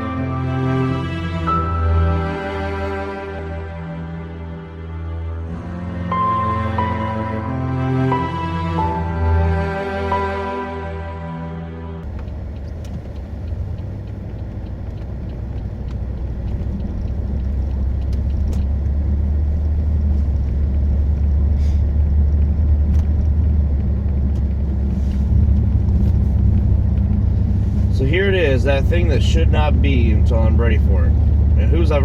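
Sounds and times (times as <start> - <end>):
car engine and road rumble: 0.0 - 10.2, 12.0 - 32.0
faint ticks: 12.0 - 18.8.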